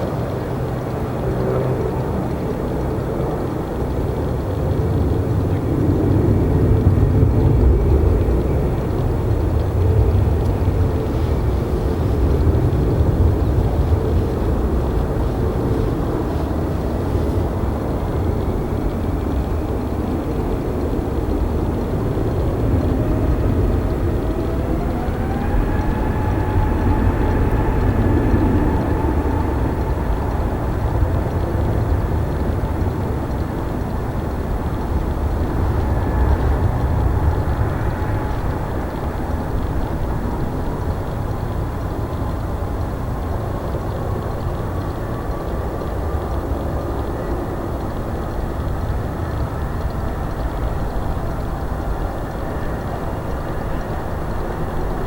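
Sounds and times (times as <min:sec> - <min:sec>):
jet engines rumbling: 0:00.0 - 0:55.0
jet engine whine rising: 0:17.0 - 0:33.8.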